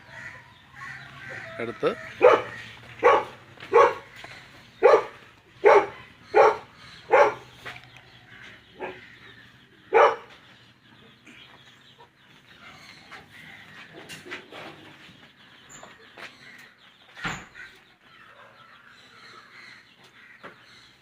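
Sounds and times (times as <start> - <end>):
dog barking: 2.2 - 4.1, 4.8 - 7.5, 8.8 - 9.0, 9.9 - 10.3.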